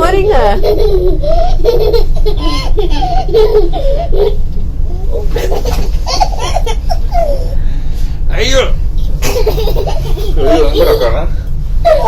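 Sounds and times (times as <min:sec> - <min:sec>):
steady low hum: 0:00.0 - 0:12.0
baby laughing: 0:00.6 - 0:04.4, 0:05.1 - 0:07.6, 0:09.2 - 0:11.2.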